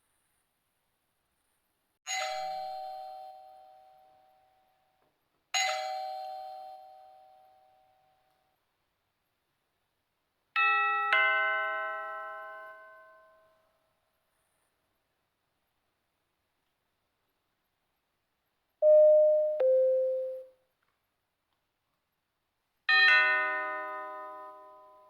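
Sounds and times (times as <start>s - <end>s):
doorbell chime strikes: 18.8s - 20.5s
doorbell ding-dong: 18.8s - 20.5s.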